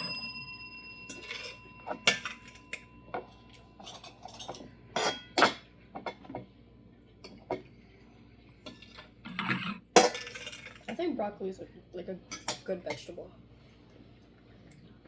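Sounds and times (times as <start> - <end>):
cutlery clinking on dishes: 1.0 - 6.5, 12.3 - 13.1.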